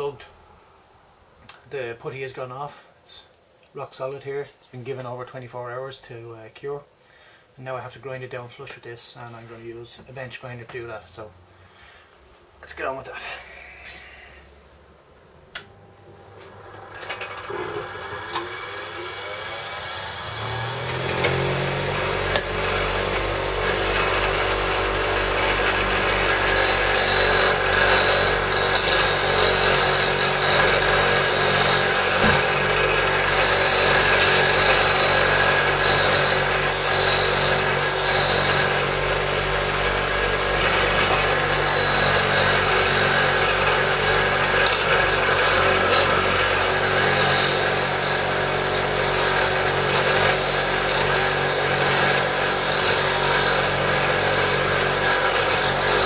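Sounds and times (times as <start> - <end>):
grinder wheel grinding metal: 15.6 - 56.0
bench grinder running: 15.7 - 56.0.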